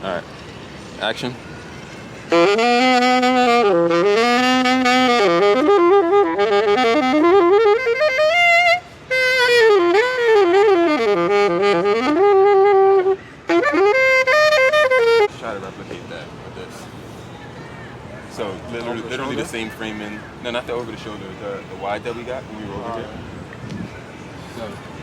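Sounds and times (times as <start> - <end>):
solo saxophone jazz line: 2.3 - 15.3.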